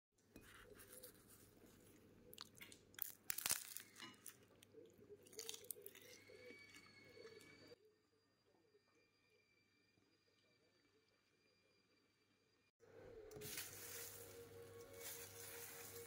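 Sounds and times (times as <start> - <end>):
crisp food crunching: 0.7 - 7.7.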